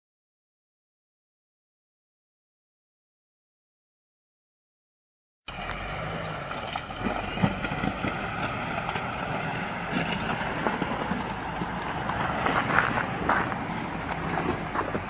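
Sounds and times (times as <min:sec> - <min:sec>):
truck engine running: 0:05.5 - 0:15.0
clicks and crunches over rock: 0:06.5 - 0:15.0.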